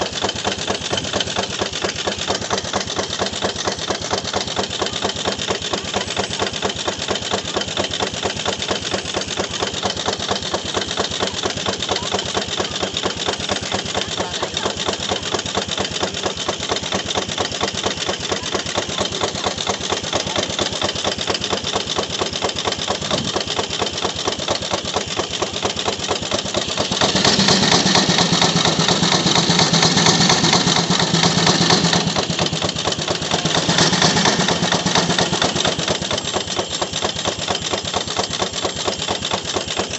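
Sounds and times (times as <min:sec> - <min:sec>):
steam traction engine running: 0:00.0 - 0:39.9
saw cutting with hum and hiss: 0:26.1 - 0:39.7.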